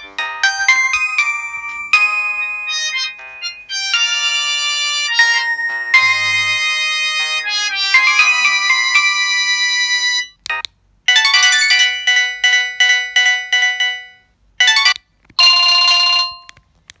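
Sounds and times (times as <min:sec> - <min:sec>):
steady held tone: 0:00.0 - 0:10.3
mobile phone ringtones: 0:00.0 - 0:16.6.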